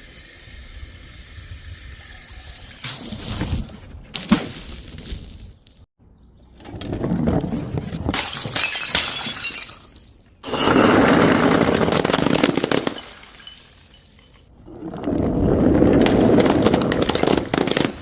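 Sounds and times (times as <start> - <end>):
glass bottles shattering: 8.1 - 14.5.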